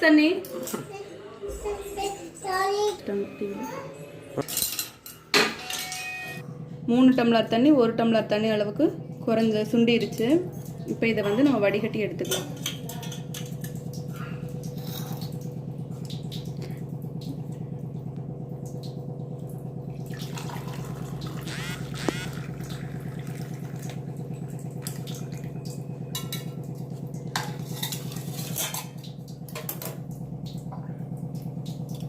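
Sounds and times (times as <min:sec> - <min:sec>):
kitchen vessels clinking: 0:04.4 - 0:06.4, 0:11.0 - 0:13.8
steady low hum: 0:06.4 - 0:32.0
liquid pouring: 0:13.3 - 0:32.0.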